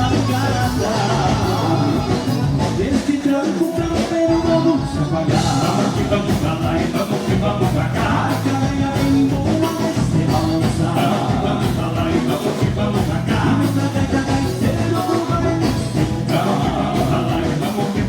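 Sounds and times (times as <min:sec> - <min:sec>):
live dance band playing: 0:00.0 - 0:18.0.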